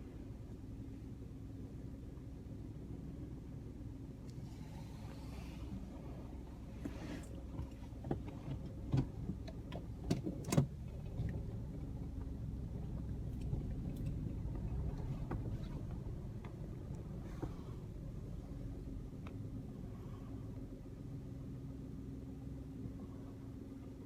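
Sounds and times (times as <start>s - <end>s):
car cabin rumble: 0.0s - 24.0s.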